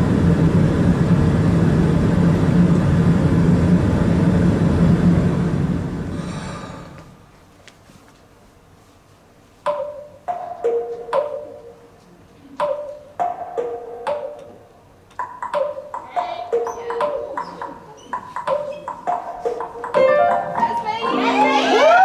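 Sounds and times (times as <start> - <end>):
slow melody of struck notes: 20.0 - 22.0.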